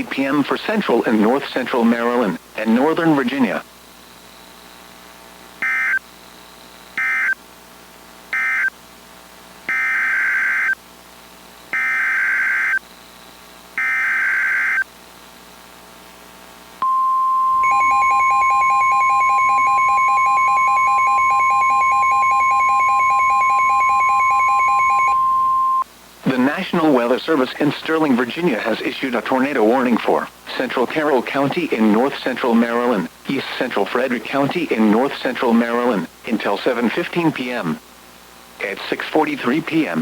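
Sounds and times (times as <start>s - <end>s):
buzzing data tone bursts: 7.0s - 7.4s, 9.7s - 10.8s, 11.7s - 12.8s, 13.8s - 14.9s, 16.8s - 25.8s
steady warning alarm tone: 11.8s - 12.8s, 13.8s - 14.8s, 16.8s - 25.8s
fast pulsing beep: 16.8s - 25.8s.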